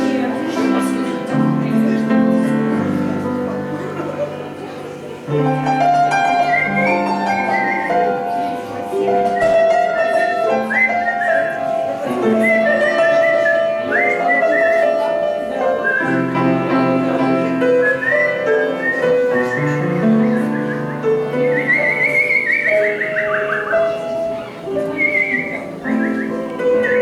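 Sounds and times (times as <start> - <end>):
grand piano ballad: 0.0 - 27.0
man whistling a melody: 5.9 - 15.2, 15.8 - 16.7, 17.6 - 24.2, 24.8 - 27.0.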